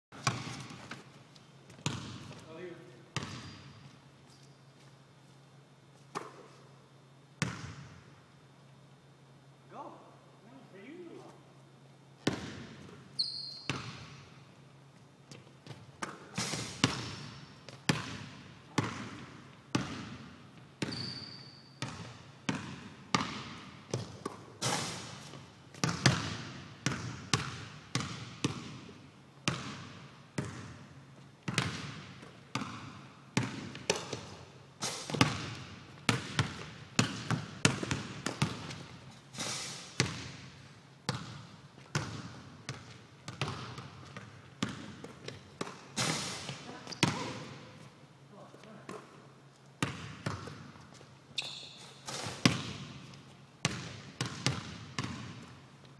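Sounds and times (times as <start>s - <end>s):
basketball bouncing: 0.2s - 0.8s, 1.7s - 2.4s, 3.2s - 3.8s, 12.2s - 13.0s, 13.6s - 14.2s, 15.3s - 39.0s, 40.0s - 47.6s, 49.8s - 51.0s, 52.1s - 55.6s
brief high squeak: 13.2s - 13.7s, 20.9s - 21.8s, 51.4s - 52.2s.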